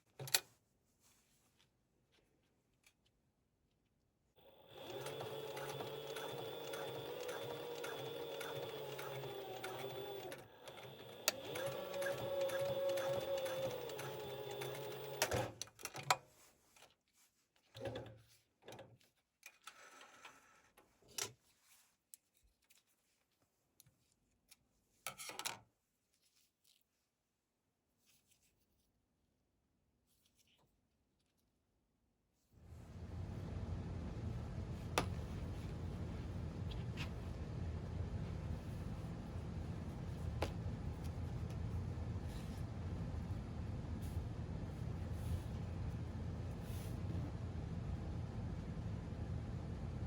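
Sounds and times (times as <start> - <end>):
sewing machine stitching: 4.4 - 15.7.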